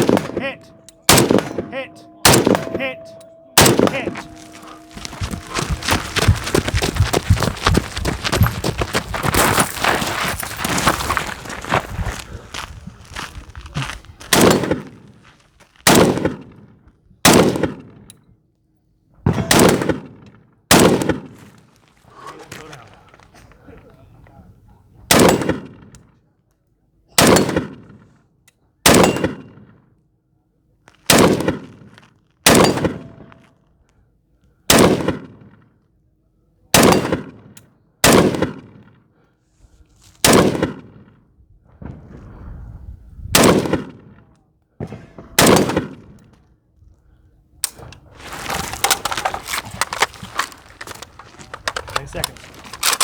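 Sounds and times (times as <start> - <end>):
gunshots with echo: 0.0 - 8.5, 14.3 - 15.1, 19.3 - 21.4, 32.5 - 33.4, 36.8 - 38.9, 40.2 - 41.1, 43.4 - 44.1, 44.8 - 46.2
dense crackling noise: 48.3 - 53.0.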